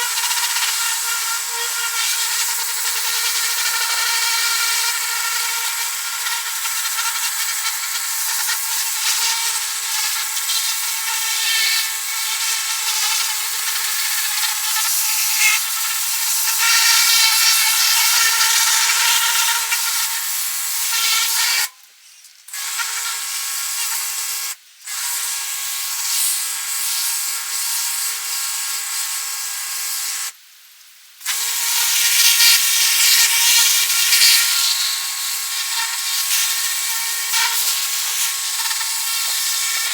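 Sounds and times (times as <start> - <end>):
power tool whining: 31.3 - 39.9.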